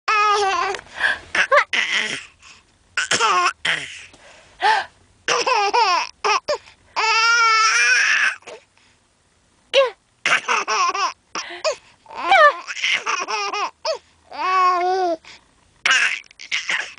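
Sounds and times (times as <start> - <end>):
baby laughing: 5.3 - 6.5, 10.3 - 14.0, 15.9 - 16.9.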